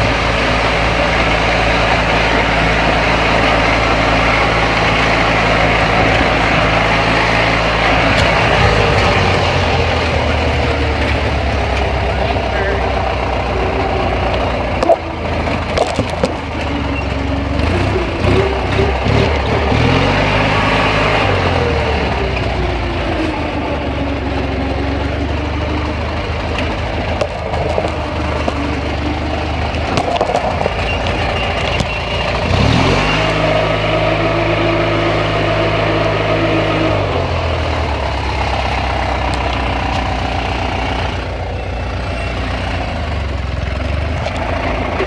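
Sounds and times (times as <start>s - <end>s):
riding mower engine running: 0.0s - 45.0s
knocks and rattles: 14.2s - 16.7s, 26.5s - 29.0s, 29.6s - 32.5s.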